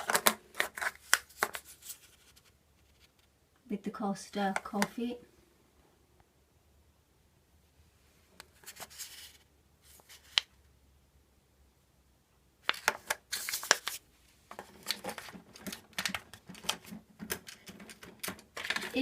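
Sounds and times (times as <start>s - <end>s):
plastic packaging rustling: 0.0s - 3.2s, 12.7s - 19.0s
plastic clicks: 14.5s - 19.0s.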